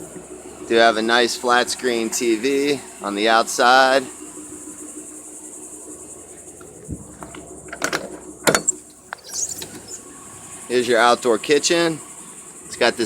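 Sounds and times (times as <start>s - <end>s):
high-pitched buzz: 0.0s - 13.0s
motorhome engine idling: 0.0s - 13.0s
sharp clicks and knocks: 6.6s - 10.0s.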